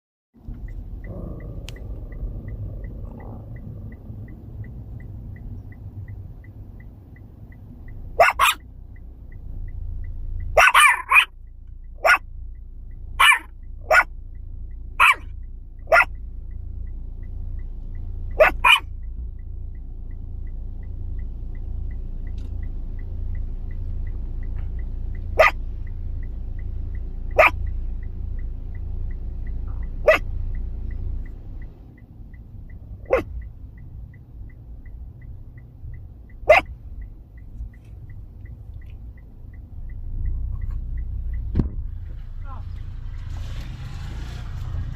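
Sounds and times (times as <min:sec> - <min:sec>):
small dog yapping: 0:08.2 - 0:08.6, 0:10.6 - 0:11.3, 0:13.2 - 0:14.1, 0:15.0 - 0:15.3, 0:15.9 - 0:16.1, 0:18.4 - 0:18.9, 0:25.4 - 0:25.6, 0:27.4 - 0:27.6, 0:30.0 - 0:30.2, 0:33.1 - 0:33.3, 0:36.5 - 0:36.7.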